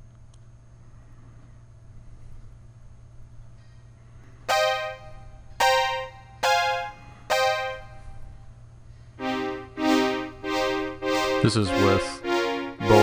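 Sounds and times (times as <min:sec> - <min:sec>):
analog synthesizer notes: 0:09.2 - 0:13.0.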